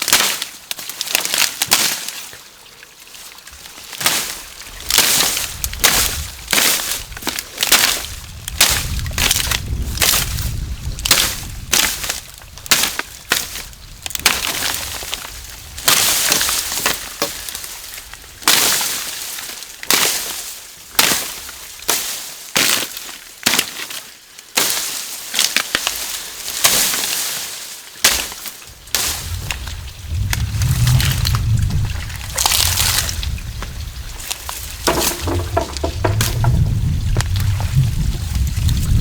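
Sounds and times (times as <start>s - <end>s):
sharp crunching scraping strokes: 28.1s - 38.0s
low rumble: 28.7s - 39.0s.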